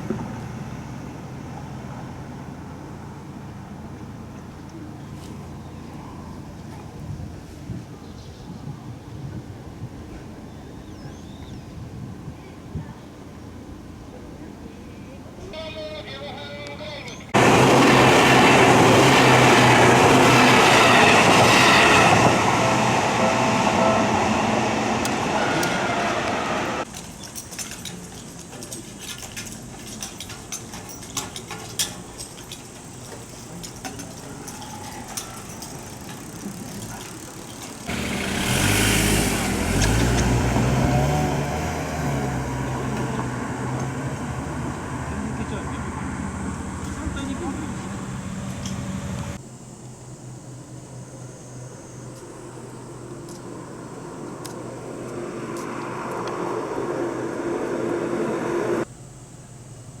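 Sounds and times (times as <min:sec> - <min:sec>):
street background: 0:00.0 - 1:00.0
vehicle engine accelerating: 0:17.3 - 0:26.9, 0:35.0 - 0:49.4, 0:52.4 - 0:58.9.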